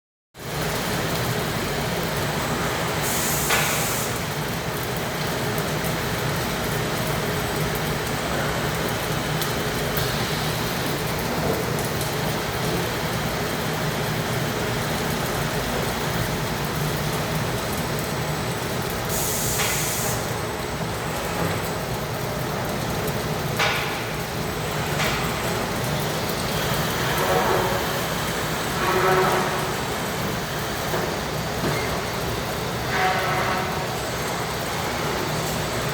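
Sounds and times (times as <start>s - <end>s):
machine hum and whirr: 0.4s - 35.9s
compressed air hissing bursts: 3.0s - 4.2s, 19.1s - 20.3s.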